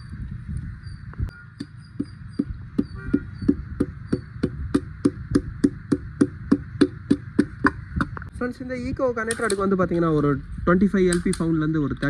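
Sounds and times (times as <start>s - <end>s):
hammer tapping on engine parts: 1.6s - 8.3s.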